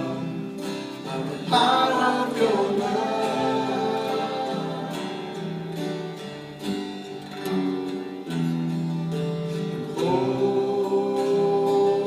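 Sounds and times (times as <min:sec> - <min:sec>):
person singing: 0:00.0 - 0:05.7, 0:09.8 - 0:12.0
acoustic guitar strumming: 0:00.0 - 0:12.0.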